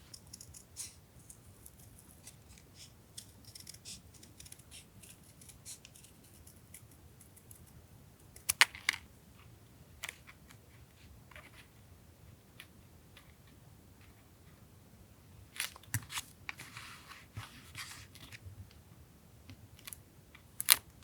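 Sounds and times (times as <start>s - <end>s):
scissors snipping paper: 0.0s - 7.7s.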